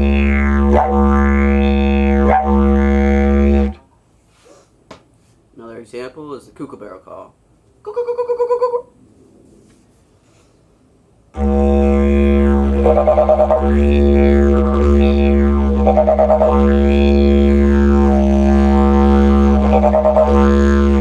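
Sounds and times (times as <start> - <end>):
didgeridoo low drone: 0.0 - 3.8, 11.4 - 21.0
kookaburra calls through didgeridoo: 11.5 - 21.0.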